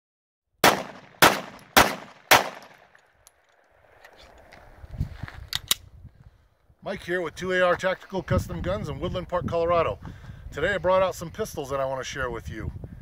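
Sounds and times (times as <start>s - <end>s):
gunshots with echo: 0.6s - 3.0s.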